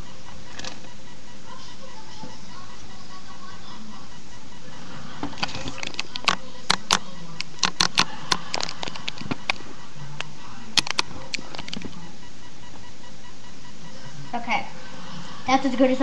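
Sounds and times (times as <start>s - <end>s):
faint tv background: 0.0s - 16.0s.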